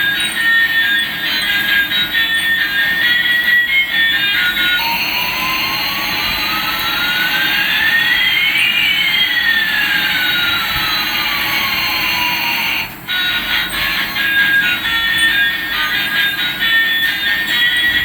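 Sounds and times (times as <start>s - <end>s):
electronic jet engine hiss: 4.2s - 18.0s.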